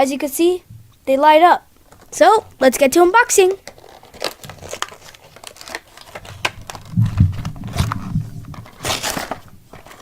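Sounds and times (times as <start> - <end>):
cardboard or plastic rustle: 1.8 - 10.0
toy packaging clicks and taps: 3.6 - 8.0
low bumps: 7.0 - 8.8.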